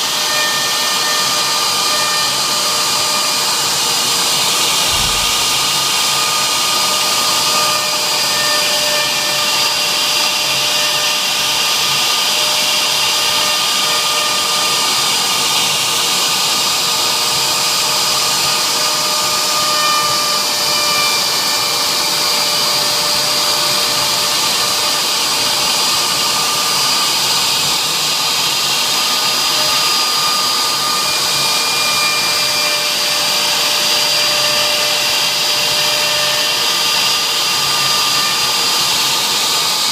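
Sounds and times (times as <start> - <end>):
high-pitched whining tones: 0.0 - 9.9
router spindle rushing: 0.0 - 39.9.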